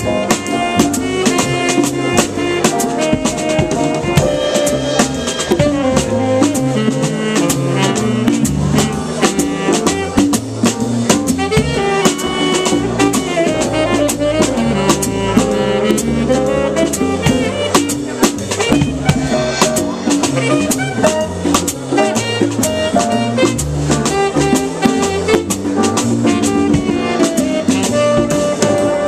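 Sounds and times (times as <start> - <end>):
stepping bass line: 0.0 - 8.8
drum kit with cymbals: 0.0 - 29.0
jazz melody lines: 0.0 - 29.0.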